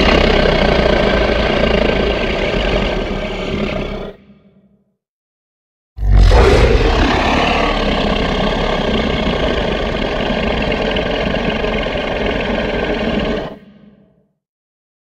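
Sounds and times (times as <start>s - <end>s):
loud rumbling noise: 6.0s - 13.5s.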